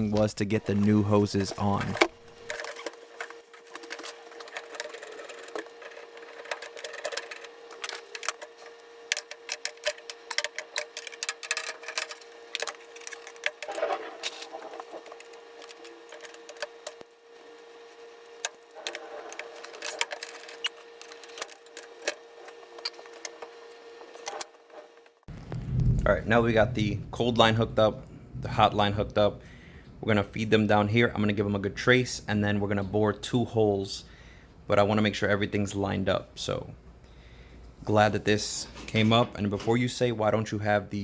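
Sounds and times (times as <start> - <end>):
steady hum: 0.0 - 41.0
hose fittings clicking and rattling: 0.6 - 17.1.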